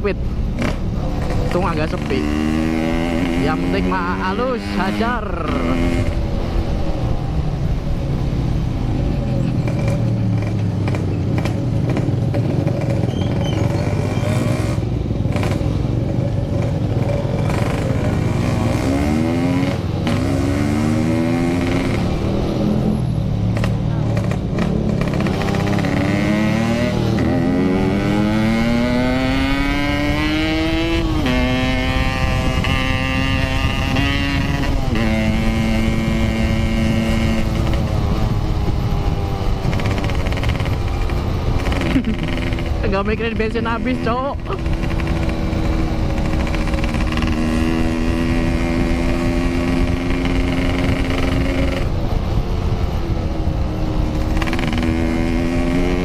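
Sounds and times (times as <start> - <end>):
motorcycle engine accelerating: 0.4 - 56.0
wind rumble on microphone: 14.8 - 56.0.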